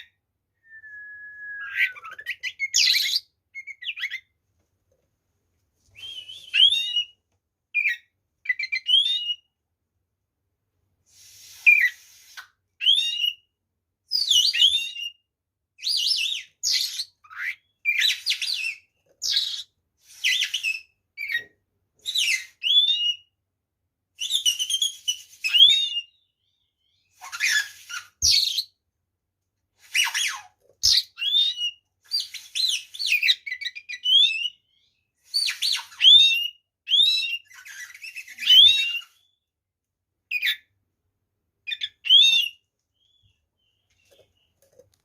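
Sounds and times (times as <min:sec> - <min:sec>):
songbird singing whistles: 0:00.5 - 0:04.3, 0:05.9 - 0:07.2, 0:07.8 - 0:09.5, 0:11.5 - 0:13.5, 0:14.1 - 0:15.2, 0:22.0 - 0:23.3, 0:24.2 - 0:28.7, 0:30.0 - 0:39.5, 0:41.7 - 0:43.8.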